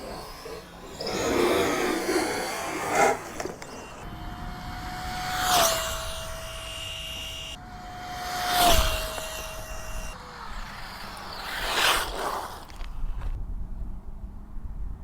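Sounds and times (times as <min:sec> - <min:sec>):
electric rc car motor whining: 0:00.0 - 0:13.4
rushing wind: 0:00.0 - 0:15.0
tyre noise on sand: 0:10.3 - 0:13.4.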